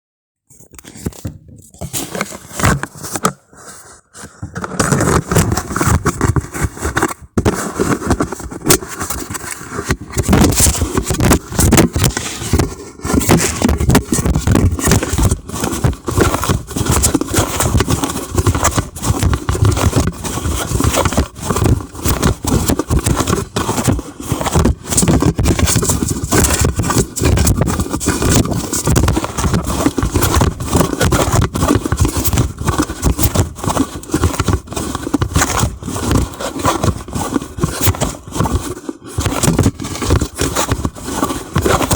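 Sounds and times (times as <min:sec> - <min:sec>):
rapid knocks and rattles: 0:10.2 - 0:41.9.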